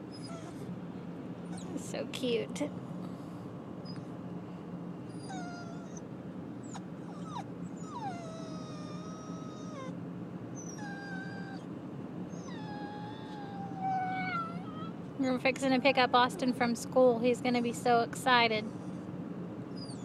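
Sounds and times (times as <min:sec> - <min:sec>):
puppy whining: 0:00.0 - 0:00.8, 0:01.5 - 0:01.9, 0:03.8 - 0:04.1, 0:05.0 - 0:11.7, 0:12.3 - 0:15.0, 0:19.7 - 0:20.0
truck humming: 0:00.0 - 0:20.0.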